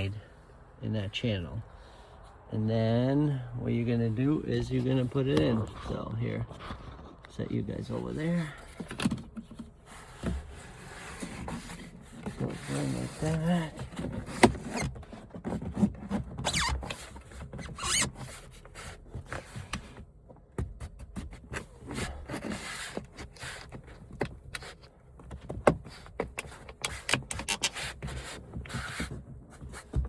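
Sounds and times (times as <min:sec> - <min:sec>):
plastic strip rubbing and scraping: 0:04.8 - 0:19.9, 0:21.1 - 0:30.0.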